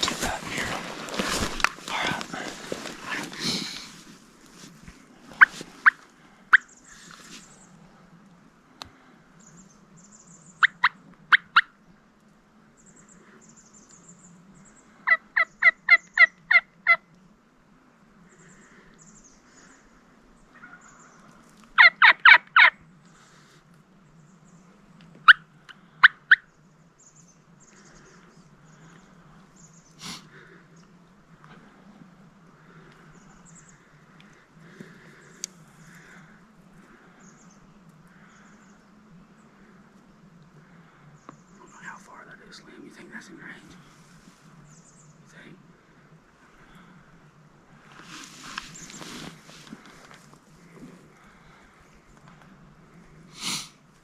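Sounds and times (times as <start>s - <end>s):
small birds chirping: 0.0s - 4.4s, 5.3s - 7.8s, 8.9s - 11.8s, 12.8s - 17.2s, 18.2s - 53.3s
wild turkey yelping: 21.8s - 22.8s, 25.2s - 26.4s.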